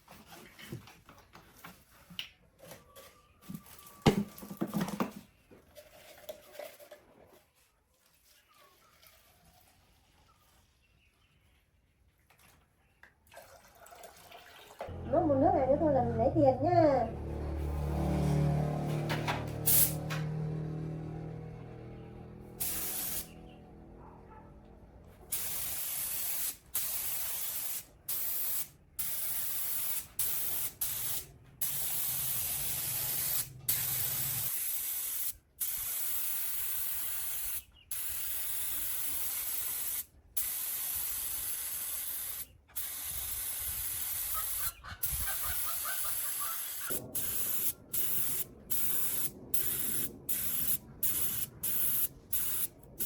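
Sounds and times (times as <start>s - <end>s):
paint spray gun hissing: 19.6s - 20.0s, 22.6s - 23.3s, 25.3s - 44.6s, 45.3s - 52.8s.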